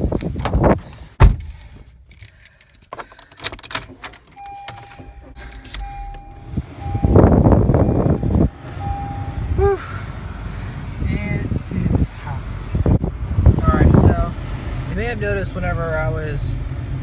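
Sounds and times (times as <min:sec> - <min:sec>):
car door thumping shut: 0:00.4 - 0:01.6
keys jingling and clicking: 0:02.1 - 0:06.4
car warning chime: 0:04.4 - 0:09.5.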